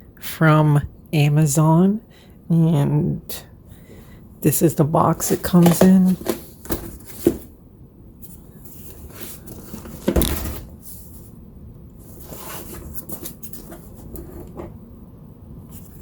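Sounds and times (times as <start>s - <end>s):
cardboard box taps and rustles: 5.6s - 7.5s, 9.2s - 10.7s.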